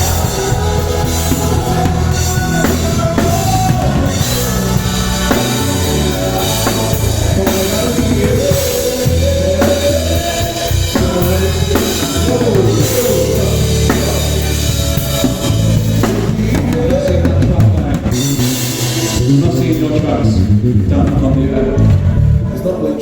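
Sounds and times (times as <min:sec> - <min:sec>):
drum kit beat: 0:00.0 - 0:22.3
bass line: 0:00.0 - 0:23.0.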